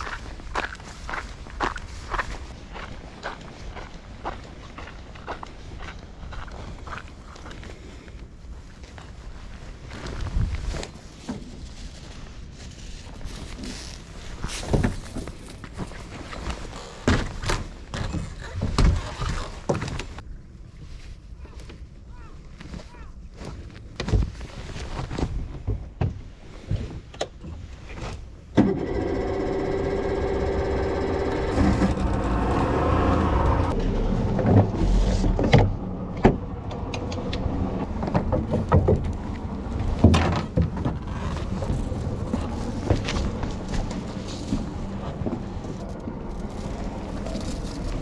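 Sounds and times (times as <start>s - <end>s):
boat engine running: 28.8s - 38.5s.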